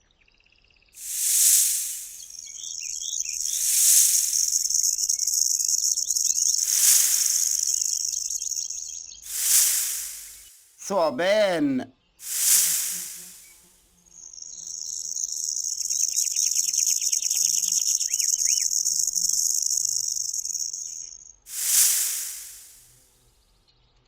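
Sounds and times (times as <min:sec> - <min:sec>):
bird chirps: 0:01.0 - 0:10.6, 0:12.2 - 0:22.8
snake hissing: 0:01.0 - 0:10.8, 0:12.2 - 0:23.0
high-pitched buzz: 0:12.2 - 0:13.6.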